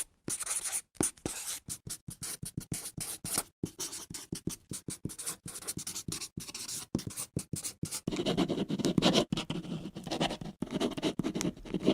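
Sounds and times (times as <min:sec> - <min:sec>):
pencil writing on paper: 0:00.3 - 0:11.9.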